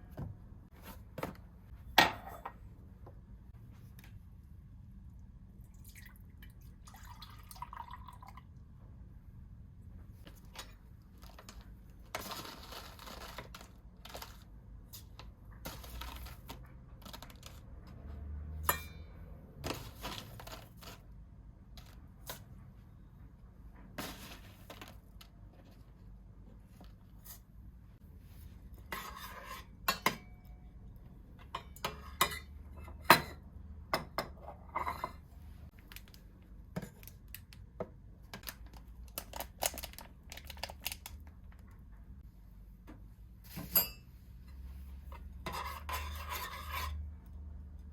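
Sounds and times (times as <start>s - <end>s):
rustling or scraping: 10.2s - 18.4s, 19.6s - 21.1s, 23.8s - 27.5s, 43.4s - 47.2s.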